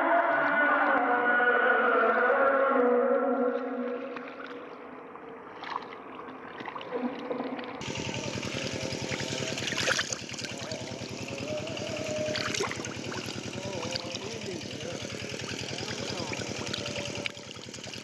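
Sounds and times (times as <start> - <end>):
quiet water: 0.0 - 18.0
small engine putter: 7.8 - 18.0.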